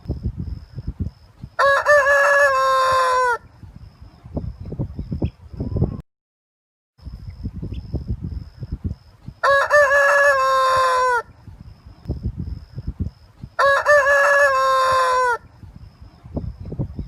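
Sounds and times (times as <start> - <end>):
rooster crowing: 1.6 - 3.4, 9.4 - 11.3, 13.6 - 15.5.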